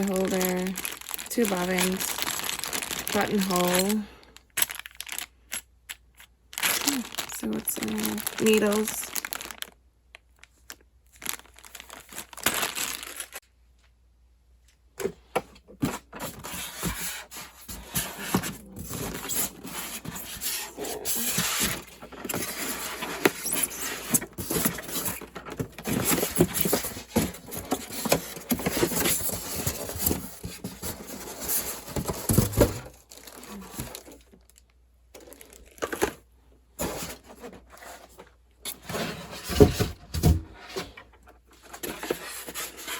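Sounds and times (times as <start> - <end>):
packaging crinkling and rustling: 0.0 - 13.5, 15.6 - 42.9.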